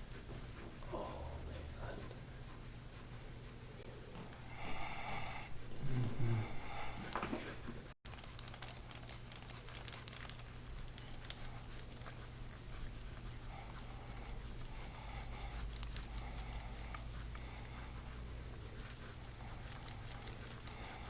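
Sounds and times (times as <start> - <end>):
crinkling and rustling clicks: 8.1 - 12.2.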